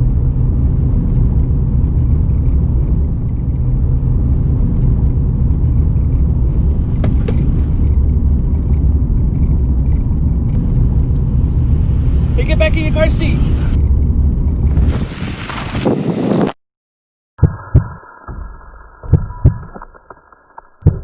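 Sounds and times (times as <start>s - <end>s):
car interior road and engine noise: 0.0s - 16.4s.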